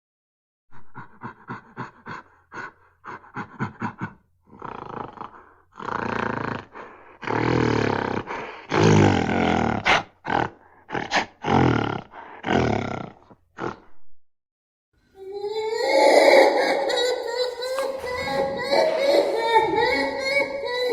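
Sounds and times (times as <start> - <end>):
gorilla screaming: 15.2 - 20.9.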